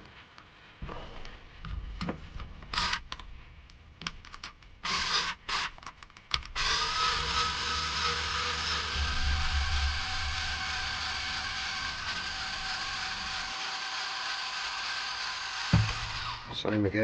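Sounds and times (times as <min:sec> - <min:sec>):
electric screwdriver running: 0:04.8 - 0:05.7, 0:06.6 - 0:16.5
steady whirring: 0:06.4 - 0:16.8.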